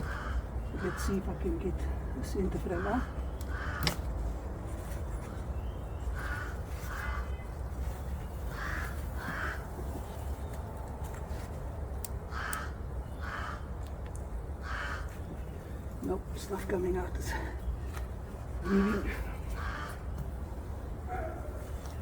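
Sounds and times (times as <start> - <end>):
bird cawing: 0.0 - 1.2, 2.8 - 4.1, 6.2 - 7.4, 8.5 - 9.7, 12.3 - 13.7, 14.6 - 15.2, 18.6 - 20.1.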